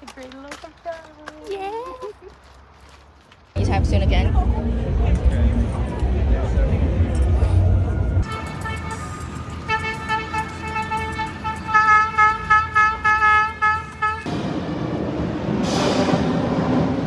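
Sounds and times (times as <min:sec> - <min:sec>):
horn honking short blasts: 0:08.2 - 0:14.3.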